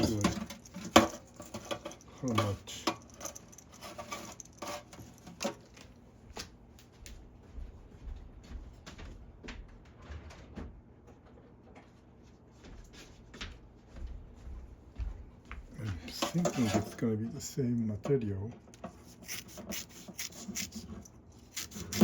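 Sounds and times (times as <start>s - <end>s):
small parts clicking and tapping: 0.0s - 5.9s.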